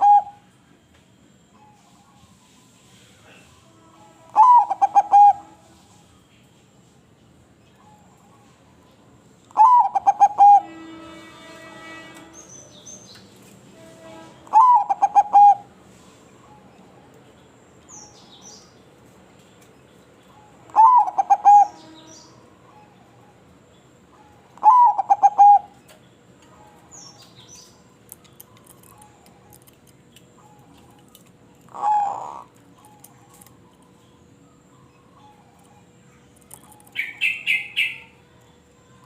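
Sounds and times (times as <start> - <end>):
dove cooing: 0.0 - 0.4, 4.4 - 5.6, 9.6 - 10.7, 14.5 - 15.7, 20.7 - 21.8, 24.2 - 25.8, 31.7 - 33.4
small birds chirping: 16.4 - 38.6.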